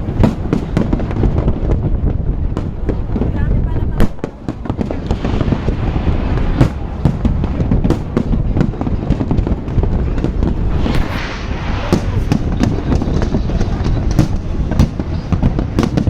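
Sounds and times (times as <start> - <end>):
continuous rumble: 0.0 - 16.0
fireworks bangs and booms: 0.0 - 16.0
hissing crackle: 4.3 - 8.5, 9.3 - 15.5.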